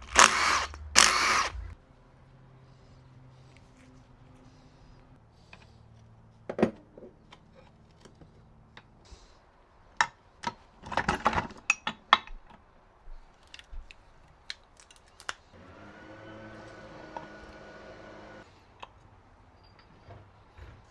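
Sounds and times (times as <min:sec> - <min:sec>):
steady mechanical whir: 0:00.0 - 0:01.8, 0:15.6 - 0:18.4.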